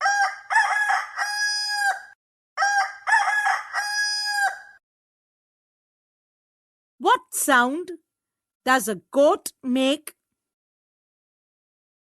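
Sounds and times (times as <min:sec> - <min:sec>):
rooster crowing: 0:00.0 - 0:04.8.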